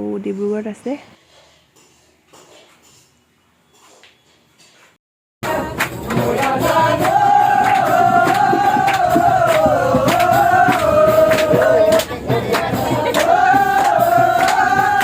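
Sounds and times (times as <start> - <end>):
percussive beat: 5.4 - 15.0
wavering singing voice: 5.4 - 15.0.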